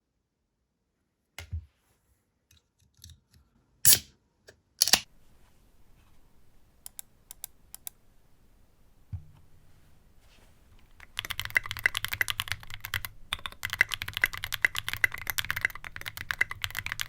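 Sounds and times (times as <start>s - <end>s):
mechanical keyboard keystrokes: 11.0s - 17.0s.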